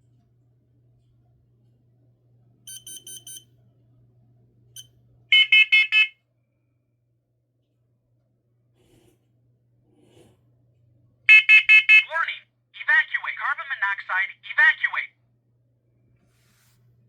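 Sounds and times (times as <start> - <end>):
alarm beeps: 2.7 - 3.5, 4.8 - 6.1.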